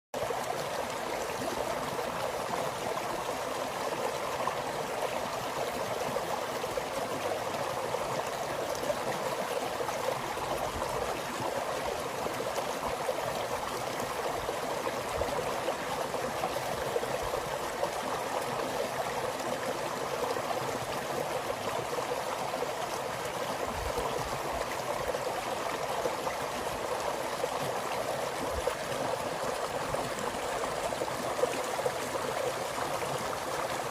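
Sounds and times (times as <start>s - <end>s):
stream water rushing and gurgling: 0.2s - 33.9s.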